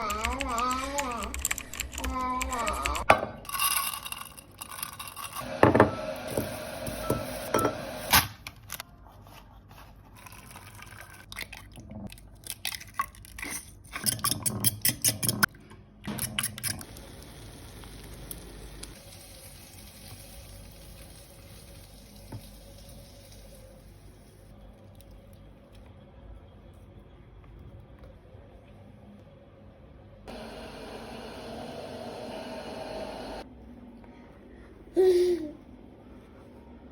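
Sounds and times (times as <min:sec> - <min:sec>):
utensils and dishes clinking: 0:13.4 - 0:15.5.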